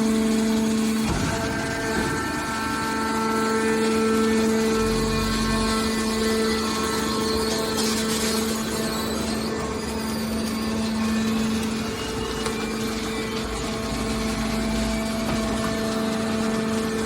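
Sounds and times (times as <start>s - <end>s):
deep machine rumble: 0.0s - 9.4s
hydraulic power unit hum: 0.0s - 17.0s.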